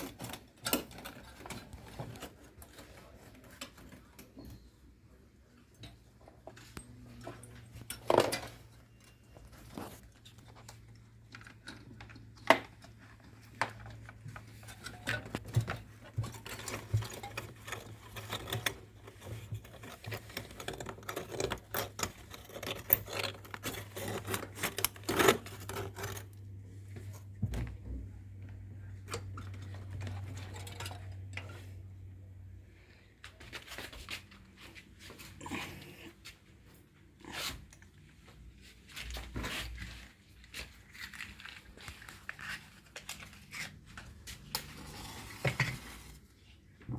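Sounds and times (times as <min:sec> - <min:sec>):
tools clicking and clattering: 0:00.0 - 0:04.6, 0:05.7 - 0:27.1, 0:29.0 - 0:31.6
low steady hum: 0:00.0 - 0:46.9.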